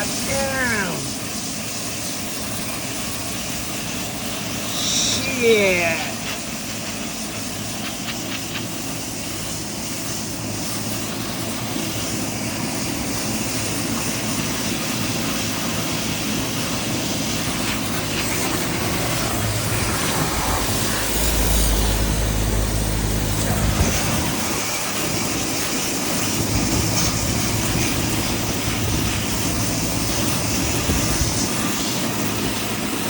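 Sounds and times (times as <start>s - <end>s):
water spray hissing on coil: 3.7s - 12.3s, 15.8s - 33.0s
low machine hum: 17.4s - 25.4s.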